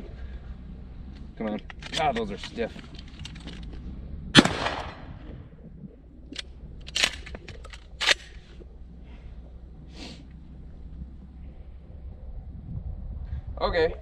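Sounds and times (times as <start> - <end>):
shotgun shot: 4.4 - 5.5
shotgun slide clacking: 6.3 - 8.6.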